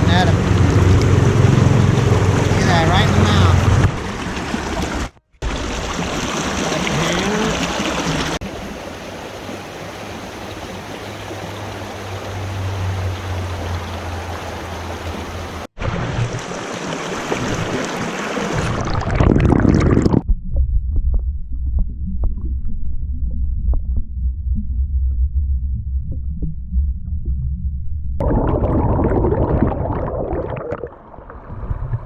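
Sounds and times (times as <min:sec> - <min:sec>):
creek rushing over rocks: 0:00.0 - 0:18.8
low muffled rumble: 0:20.2 - 0:30.0.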